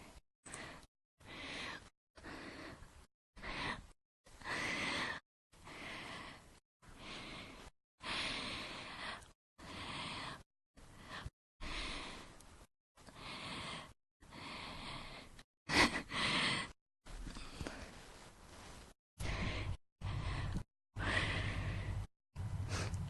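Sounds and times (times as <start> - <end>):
woman breathing and sighing: 13.0 - 23.0.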